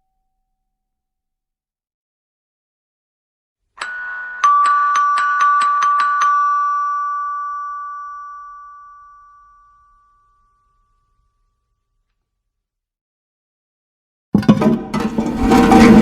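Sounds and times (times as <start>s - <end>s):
doorbell ringing: 3.8s - 11.0s.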